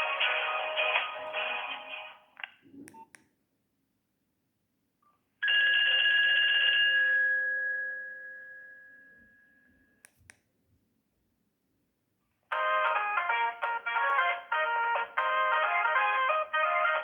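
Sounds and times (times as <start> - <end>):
bell-like ringtone chime: 5.4 - 9.9.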